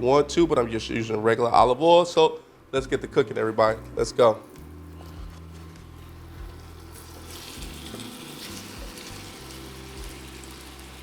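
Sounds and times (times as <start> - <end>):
chicken sizzling in hot oil: 6.0 - 11.0.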